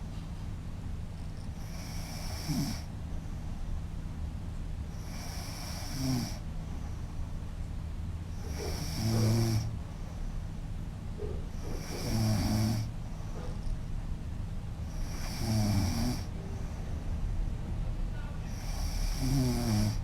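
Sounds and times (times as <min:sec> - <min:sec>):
woman snoring: 0:01.6 - 0:02.9, 0:05.0 - 0:06.4, 0:08.4 - 0:09.7, 0:11.7 - 0:12.9, 0:15.0 - 0:16.4, 0:18.5 - 0:20.0.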